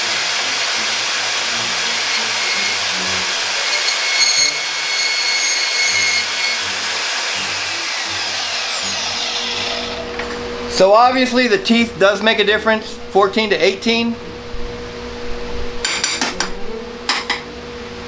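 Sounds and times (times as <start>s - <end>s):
band saw cutting pipe: 0.0s - 10.1s
thin ringing tone: 3.6s - 6.6s.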